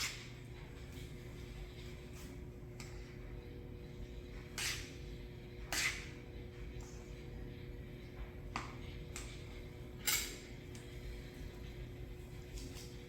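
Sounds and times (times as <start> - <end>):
faint steady hum: 0.0 - 13.0
spoon clinking against dishes: 8.6 - 10.8.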